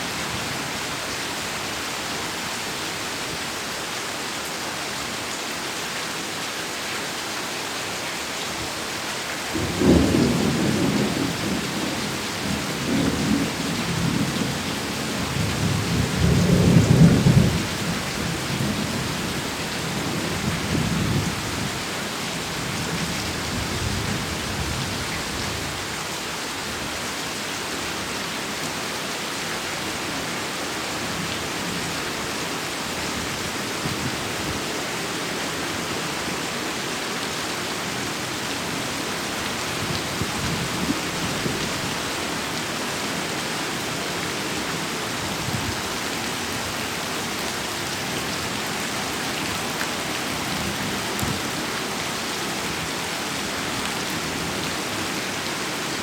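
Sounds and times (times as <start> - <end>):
heavy rain falling: 0.0 - 56.0
thunder rumbling: 9.6 - 14.6.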